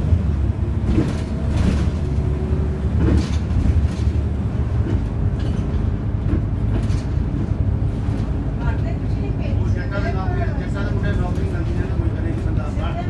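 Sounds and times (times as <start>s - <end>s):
bus engine and road drone: 0.0s - 13.0s
rattles and knocks: 0.8s - 8.9s.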